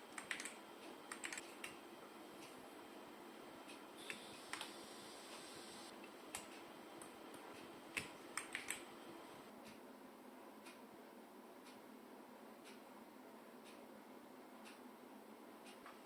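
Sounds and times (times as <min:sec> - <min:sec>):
faint steady hiss: 0:00.0 - 0:16.0
mechanical keyboard keystrokes: 0:00.1 - 0:01.8, 0:08.0 - 0:08.8.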